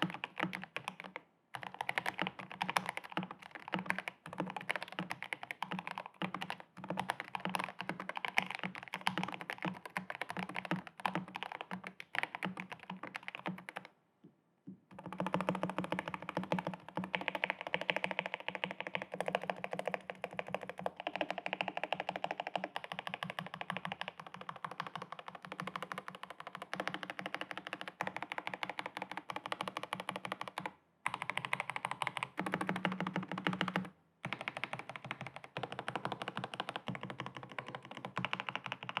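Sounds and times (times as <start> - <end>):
mechanical keyboard typing: 0.0 - 13.9, 14.9 - 39.0.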